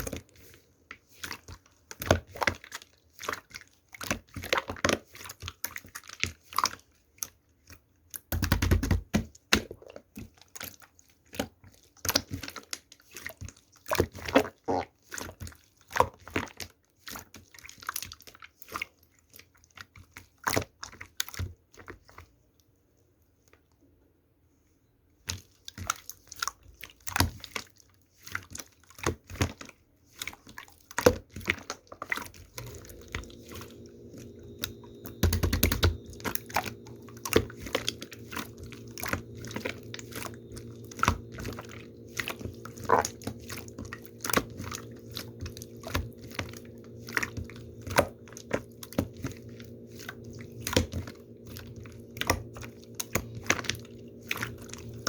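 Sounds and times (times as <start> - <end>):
close-up clicks taps and crunches: 8.2 - 9.3
steady electrical hum: 32.4 - 55.0.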